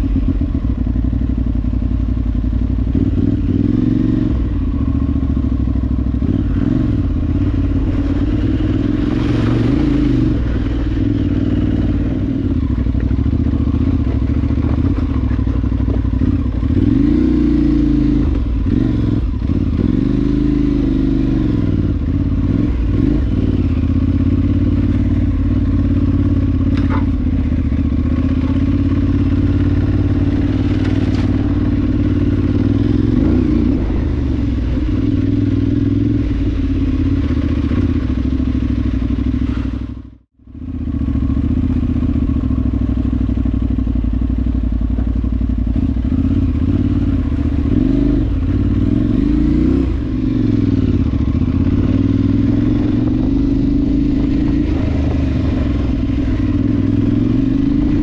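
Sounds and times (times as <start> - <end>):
motorcycle engine revving: 0.0 - 58.0
light knocks and clatter: 14.0 - 16.2.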